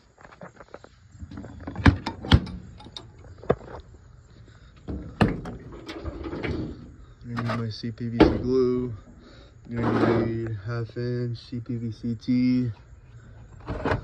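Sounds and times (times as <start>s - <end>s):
rummaging in truck compartment: 0.1s - 10.6s, 13.4s - 14.0s.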